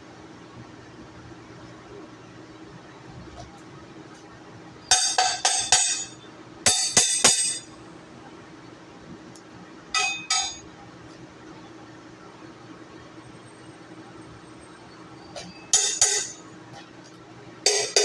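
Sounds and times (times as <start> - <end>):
hammer striking steel: 4.9 - 7.7, 10.0 - 10.6, 15.4 - 16.4, 17.7 - 18.0.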